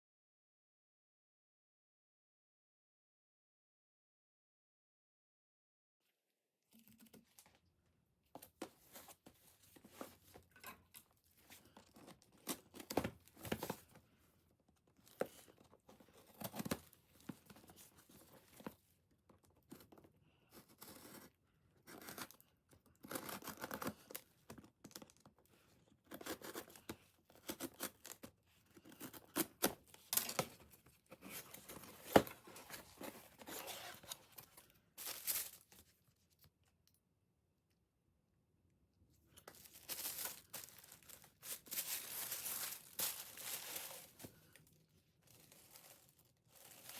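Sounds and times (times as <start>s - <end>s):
packaging rustling and tearing: 39.5s - 44.4s, 45.3s - 46.9s.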